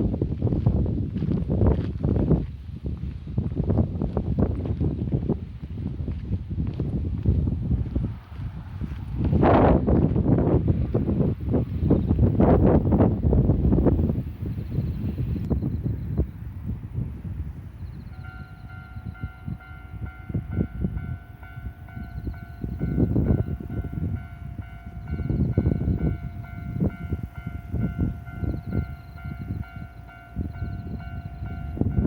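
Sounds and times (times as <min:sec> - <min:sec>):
wind rumbling on microphone: 0:00.0 - 0:32.0
train approaching: 0:06.7 - 0:32.0
railway crossing warning bell: 0:11.7 - 0:32.0.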